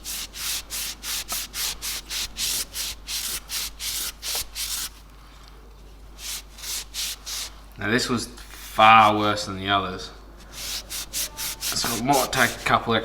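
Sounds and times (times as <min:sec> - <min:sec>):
rubbing strokes on steel tool: 0:06.2 - 0:07.6, 0:10.5 - 0:12.8.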